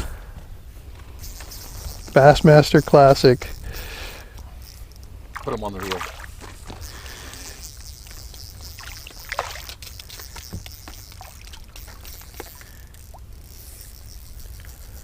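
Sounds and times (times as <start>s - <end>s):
water sloshing against boat hull: 5.3s - 6.8s
small knocks and clicks: 8.1s - 13.1s.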